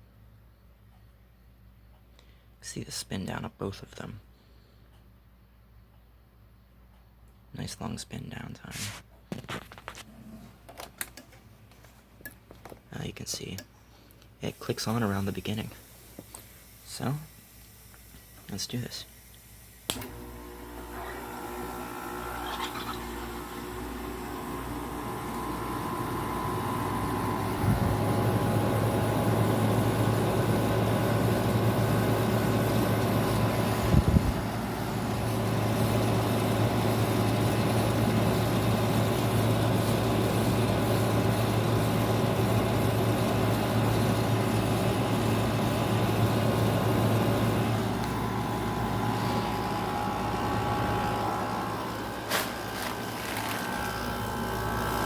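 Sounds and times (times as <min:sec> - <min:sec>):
air conditioner fan airflow: 0:00.0 - 0:55.0
compressor low hum: 0:00.0 - 0:55.0
compressor kicking in with a thump: 0:19.8 - 0:23.0, 0:23.8 - 0:38.6, 0:46.2 - 0:55.0.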